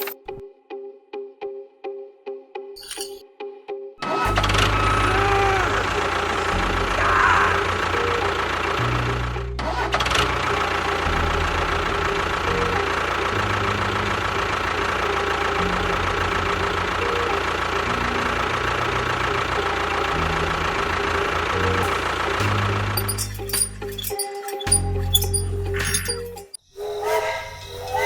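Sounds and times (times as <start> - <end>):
engine idling: 4.2 - 26.6.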